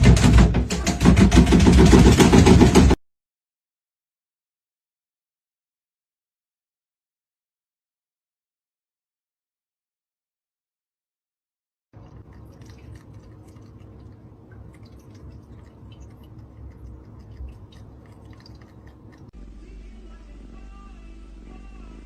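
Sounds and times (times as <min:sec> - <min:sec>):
cat chewing food: 0:12.0 - 0:19.4
low hum: 0:12.0 - 0:22.0.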